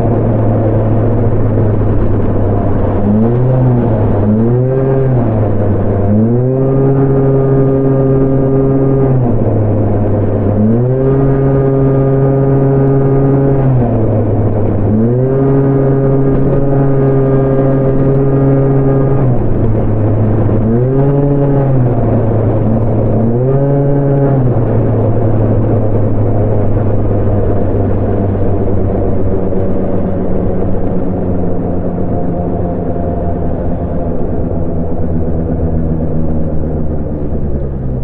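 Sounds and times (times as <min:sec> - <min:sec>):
scooter engine revving and idling: 0:00.0 - 0:38.0.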